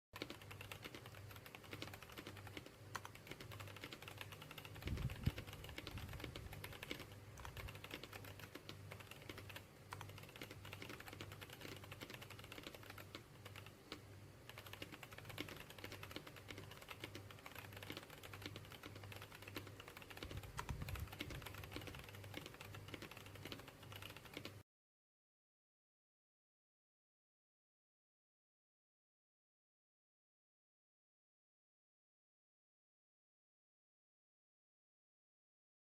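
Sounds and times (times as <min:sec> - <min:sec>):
mechanical keyboard typing: 0:00.2 - 0:24.6.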